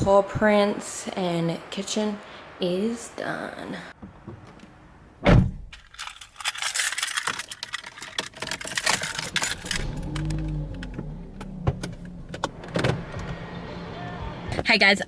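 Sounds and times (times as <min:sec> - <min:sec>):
thump: 0:05.2 - 0:05.7
keys jangling: 0:05.9 - 0:10.7
car engine starting: 0:08.7 - 0:14.5.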